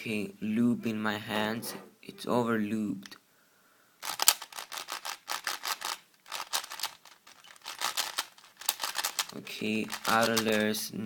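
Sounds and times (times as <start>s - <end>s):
puzzle cube clicking: 4.0s - 10.7s.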